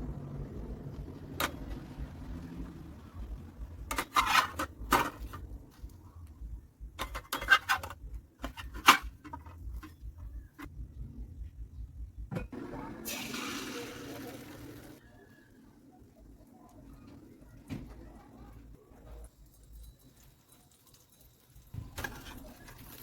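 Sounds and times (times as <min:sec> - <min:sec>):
low hum: 0:00.0 - 0:04.0
household objects clattering: 0:03.8 - 0:05.8, 0:07.0 - 0:10.7.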